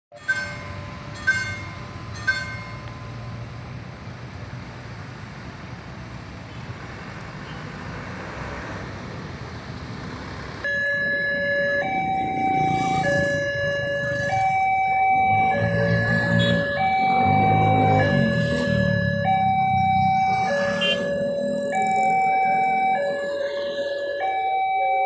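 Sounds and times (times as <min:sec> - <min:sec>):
level crossing warning siren: 0:10.6 - 0:25.0.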